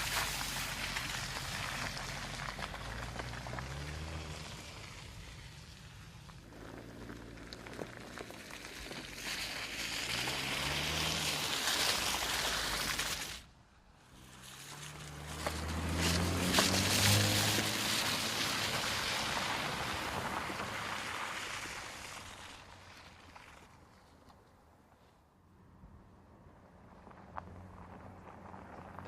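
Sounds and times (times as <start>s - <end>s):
car engine revving: 0.8s - 5.5s, 9.6s - 13.3s, 14.0s - 21.2s.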